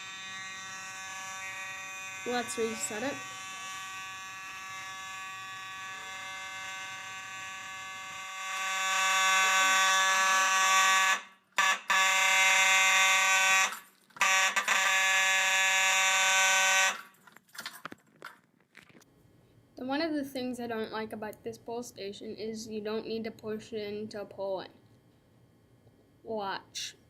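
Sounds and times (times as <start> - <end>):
fire alarm buzzing: 0.0 - 17.2.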